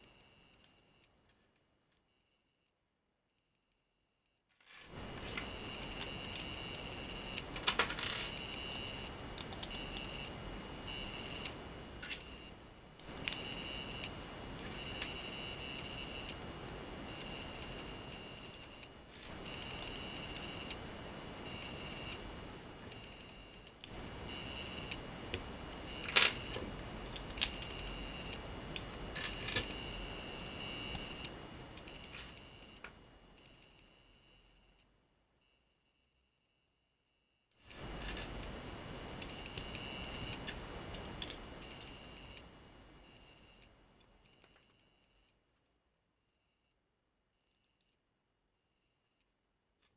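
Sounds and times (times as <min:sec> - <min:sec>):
steady high whine: 0:04.9 - 0:35.0, 0:37.7 - 0:45.4.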